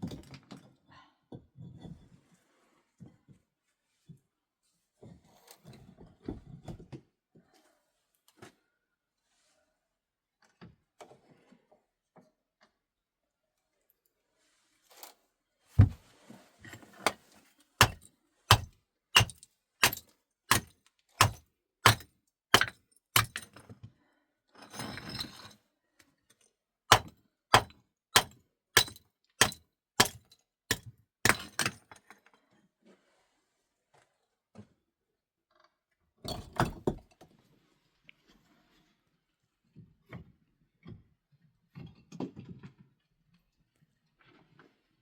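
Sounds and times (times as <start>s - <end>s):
rustling or scraping: 14.4s - 17.8s.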